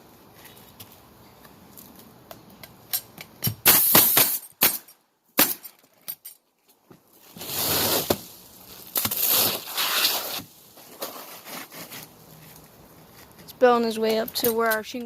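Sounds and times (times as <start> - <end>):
roofing shingles scraping: 7.0 - 13.9.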